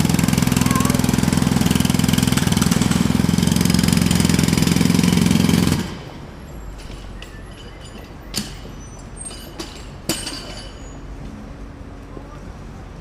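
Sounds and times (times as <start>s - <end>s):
jackhammer hammering: 0.0s - 6.2s
sharp knocks and clinks: 6.7s - 11.1s.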